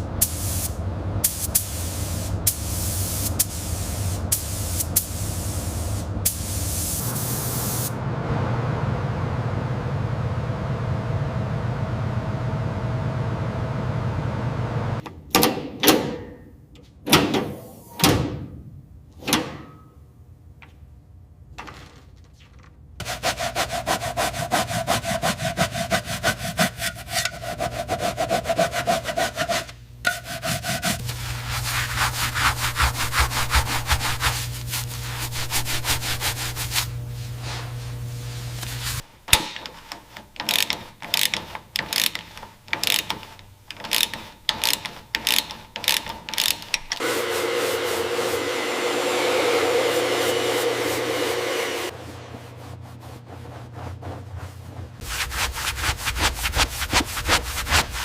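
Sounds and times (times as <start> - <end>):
steady hum: 0.0 - 15.0, 27.5 - 39.3
rhythmic sanding strokes: 23.0 - 39.0, 49.8 - 58.0.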